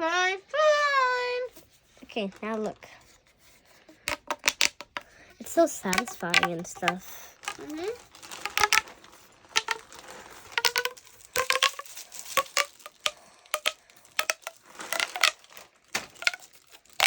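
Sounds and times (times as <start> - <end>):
plastic fidget toy clicking: 4.0 - 8.9, 9.6 - 15.4, 16.0 - 17.0.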